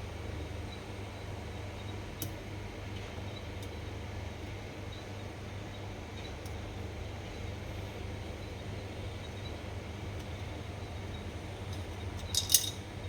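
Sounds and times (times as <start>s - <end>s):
small parts clicking: 11.7s - 12.8s.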